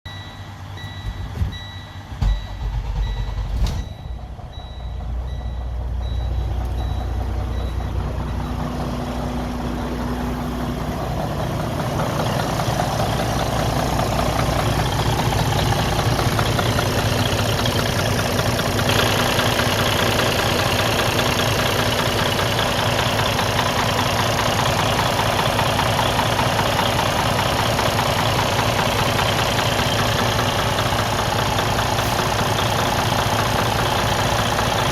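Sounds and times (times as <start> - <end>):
repeating electronic beep: 0.1 - 8.8
diesel engine cranking and running: 0.1 - 34.9
engine knocking: 0.8 - 34.9.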